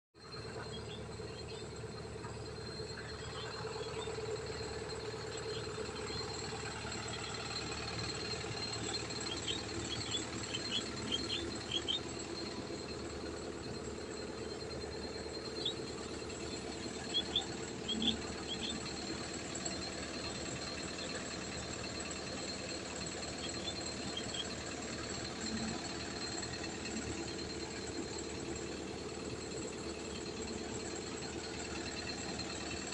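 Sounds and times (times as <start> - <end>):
excavator diesel engine running: 0.2 - 32.9
short high squeaks: 0.8 - 12.8.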